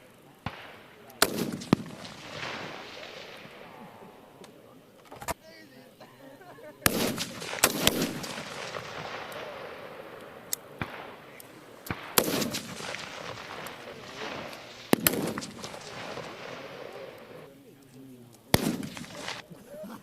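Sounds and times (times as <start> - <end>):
distant rifle shots: 0.0 - 4.6, 6.8 - 17.5, 18.5 - 19.5
loud near rifle shots: 0.0 - 4.6, 6.8 - 17.5, 18.5 - 19.5
rolling gunshot echo: 0.4 - 4.6, 6.8 - 17.5, 18.5 - 19.5.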